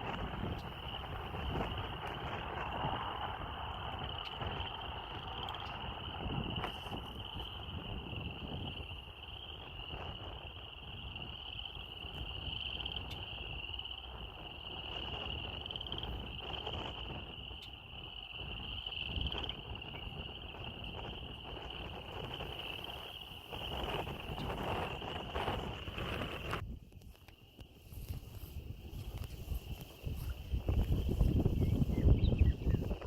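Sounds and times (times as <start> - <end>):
crickets chirring: 0.0 - 33.0.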